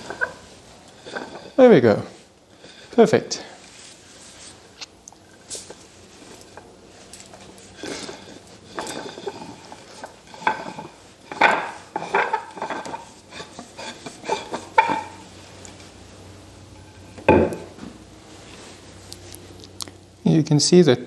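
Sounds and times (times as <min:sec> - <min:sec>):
wooden screw knocking and scraping: 0:00.0 - 0:00.4.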